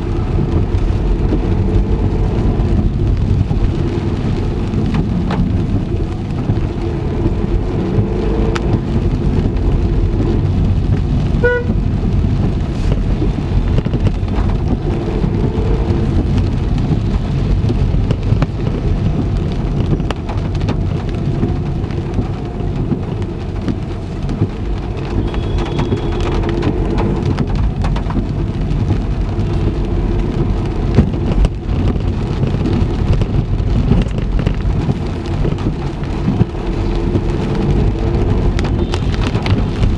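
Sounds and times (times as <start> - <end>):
deep road rumble: 0.0 - 39.9
heavy rain on car roof: 0.0 - 39.9.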